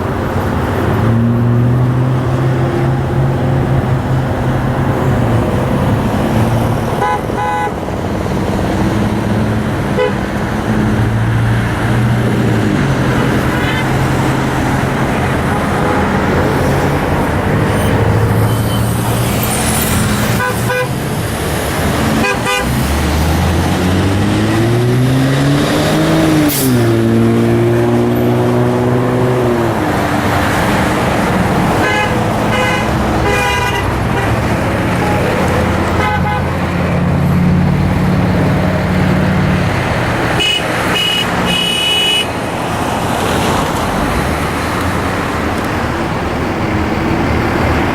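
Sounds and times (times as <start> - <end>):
car horns honking: 0.0 - 8.2, 9.8 - 11.0, 13.1 - 21.1, 22.0 - 23.0, 30.5 - 37.0, 40.1 - 42.6
deep engine drone: 0.0 - 25.8
freeway traffic passing: 0.0 - 47.9.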